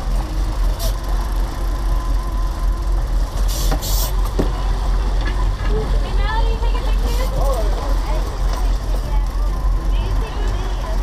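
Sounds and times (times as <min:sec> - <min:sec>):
boat engine rumbling: 0:00.0 - 0:11.0
short hiss: 0:03.5 - 0:04.2.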